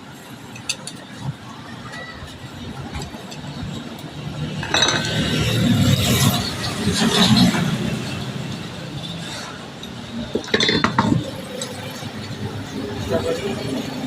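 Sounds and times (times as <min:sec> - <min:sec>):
metal parts and tools clattering: 0:04.4 - 0:08.1, 0:09.0 - 0:12.4.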